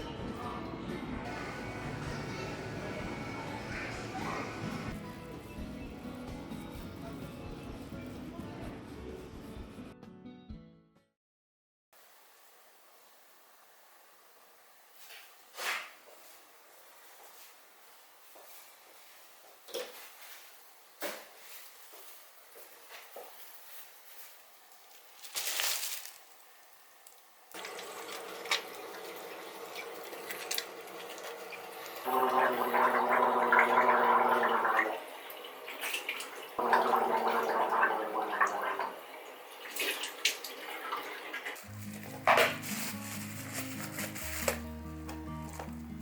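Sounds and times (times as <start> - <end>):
running water: 27.5 - 44.6.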